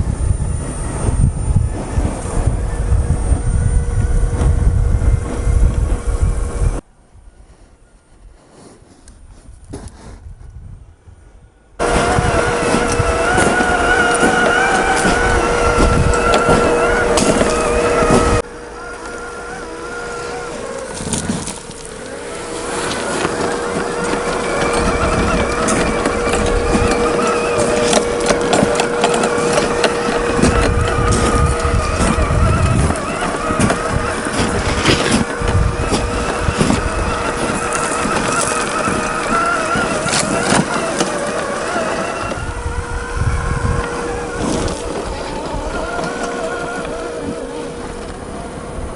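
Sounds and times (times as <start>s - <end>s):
chassis rattle: 0.0s - 6.8s, 11.8s - 48.9s
toy car motor whining: 0.0s - 6.8s, 11.8s - 48.9s
low rumble: 0.0s - 7.3s, 10.4s - 19.2s.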